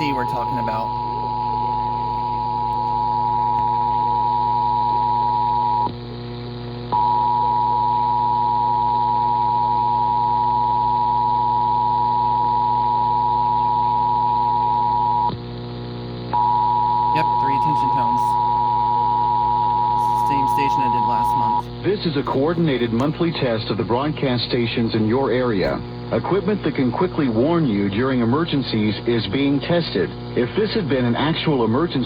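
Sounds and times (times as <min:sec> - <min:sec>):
steady low hum: 0:00.0 - 0:32.0
two-tone alarm: 0:16.4 - 0:21.7.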